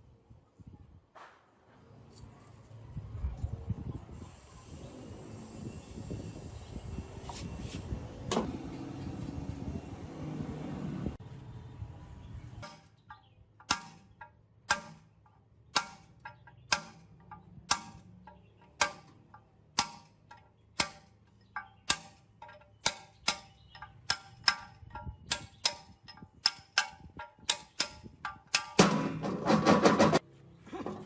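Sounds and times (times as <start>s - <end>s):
hammer striking metal: 12.6s - 30.2s.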